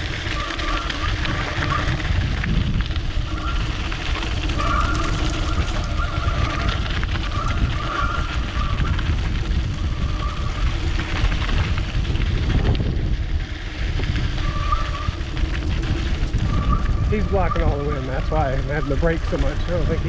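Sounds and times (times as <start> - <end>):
tyres rumbling over dirt: 0.0 - 20.0
wind buffeting microphone: 0.0 - 20.0
disc brakes squealing: 3.2 - 9.0, 14.4 - 20.0.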